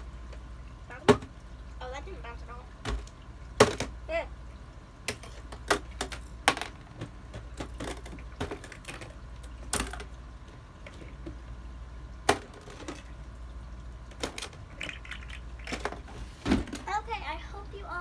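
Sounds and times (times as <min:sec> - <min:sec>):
small objects clicking and knocking: 0:14.2 - 0:16.1.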